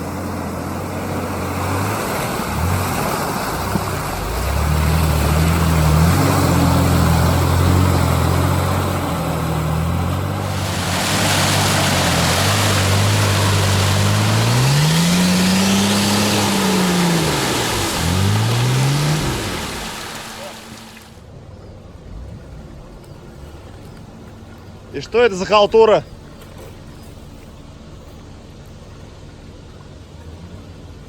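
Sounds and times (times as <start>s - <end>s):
off-road vehicle engine revving: 0.0s - 31.0s
rushing noise: 10.4s - 21.2s.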